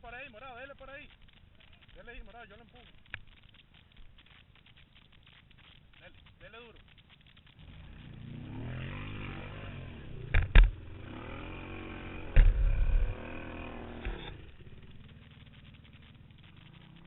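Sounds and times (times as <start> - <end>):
quad bike engine revving: 7.6 - 17.0.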